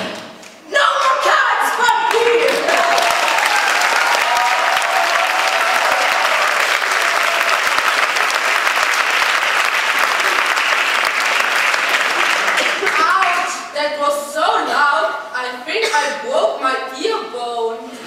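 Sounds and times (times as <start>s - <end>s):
voices cheering: 0.8s - 9.0s
audience applauding: 1.8s - 13.6s.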